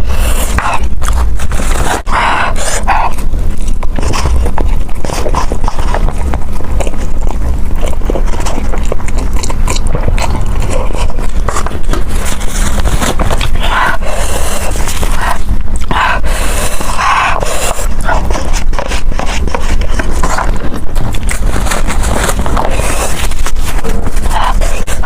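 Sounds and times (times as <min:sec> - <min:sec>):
chewing and biting food: 0:00.0 - 0:25.0
steady low rumble: 0:00.0 - 0:25.0.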